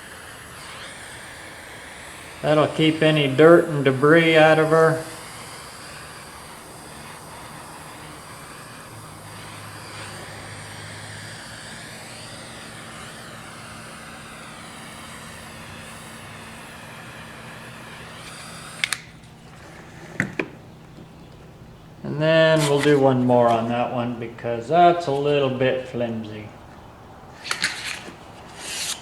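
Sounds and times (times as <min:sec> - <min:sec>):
torch flame hissing: 0:00.0 - 0:29.0
torch switch clicks: 0:17.6 - 0:19.4.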